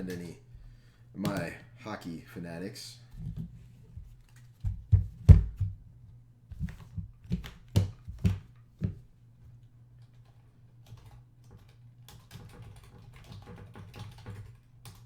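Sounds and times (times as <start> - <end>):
knocks on a hard surface: 4.7 - 5.8.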